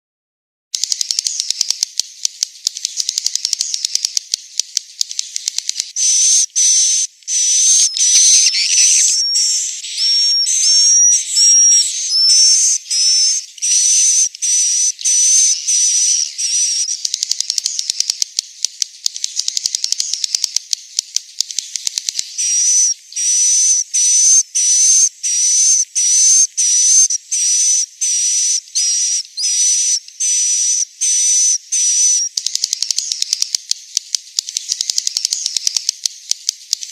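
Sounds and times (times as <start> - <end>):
bird dry clicking: 0.8 - 6.2, 12.2 - 22.9, 32.1 - 36.9
high buzzy bird chirps: 2.8 - 18.3, 19.1 - 20.7, 21.4 - 33.6, 34.6 - 35.9.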